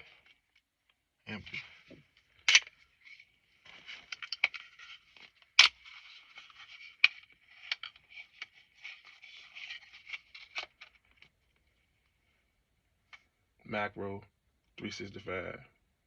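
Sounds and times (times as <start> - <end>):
scraping and rustling: 1.4 - 11.3.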